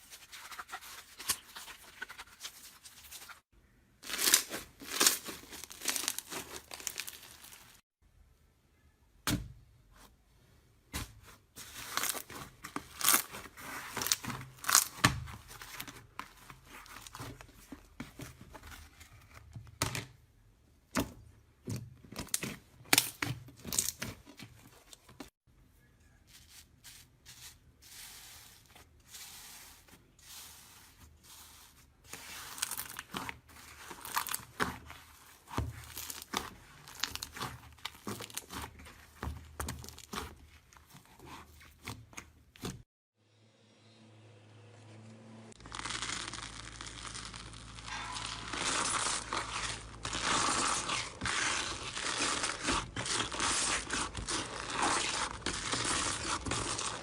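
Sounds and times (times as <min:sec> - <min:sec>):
slime squished by hand: 0:45.6 - 0:57.0.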